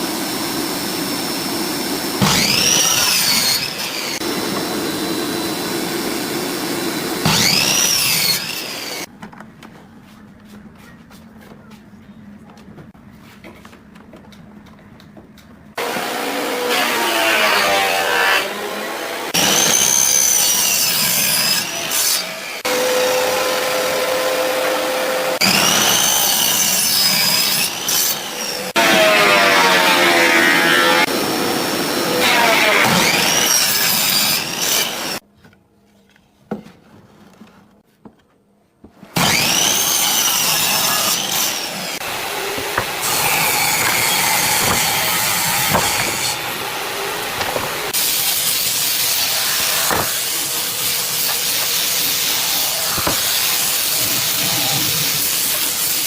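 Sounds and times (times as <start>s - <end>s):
chainsaw cutting logs: 2.2s - 9.1s, 22.6s - 35.2s, 39.2s - 56.0s.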